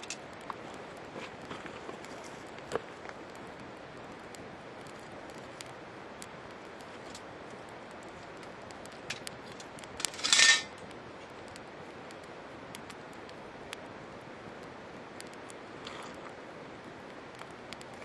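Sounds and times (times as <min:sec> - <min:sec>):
wood fire hissing and crackling: 0:00.0 - 0:18.0
metal cookware clattering: 0:10.0 - 0:10.7.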